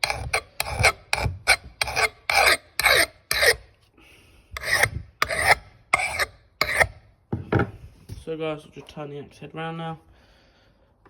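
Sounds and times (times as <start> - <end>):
file rasping on axe head: 0.0 - 3.7, 4.6 - 7.0.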